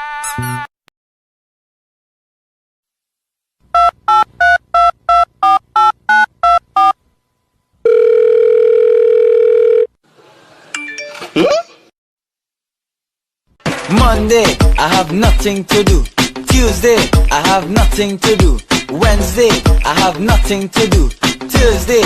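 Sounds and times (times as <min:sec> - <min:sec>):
steady phone tone: 0:07.8 - 0:10.0.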